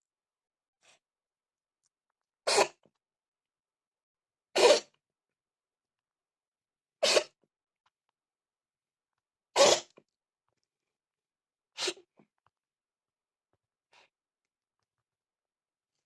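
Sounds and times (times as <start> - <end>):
cat sneezing: 2.4 - 2.8, 4.5 - 5.0, 7.0 - 7.4, 9.6 - 10.0, 11.8 - 12.1.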